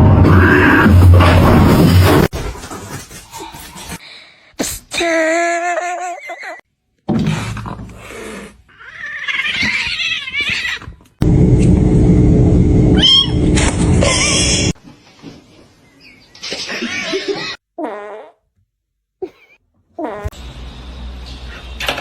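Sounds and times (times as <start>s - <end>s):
cat meowing and yowling: 8.8s - 10.9s
loud steady low noise: 11.2s - 14.7s.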